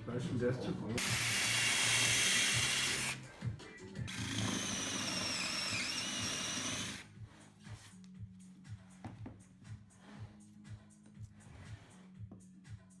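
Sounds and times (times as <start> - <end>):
quiet background music: 0.0 - 13.0
belt grinder whining: 1.0 - 3.2, 4.1 - 7.0.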